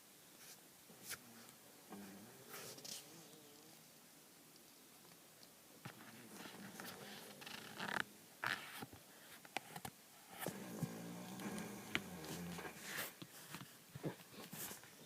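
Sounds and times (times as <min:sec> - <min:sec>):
man snoring: 0:10.4 - 0:12.9.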